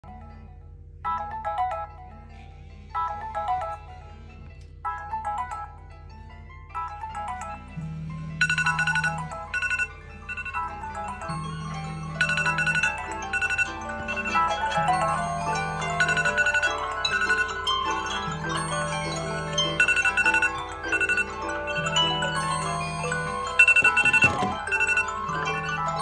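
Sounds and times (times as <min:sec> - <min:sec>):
electronic phone ringtone melody: 0:01.0 - 0:26.0
steady low drone: 0:02.1 - 0:26.0.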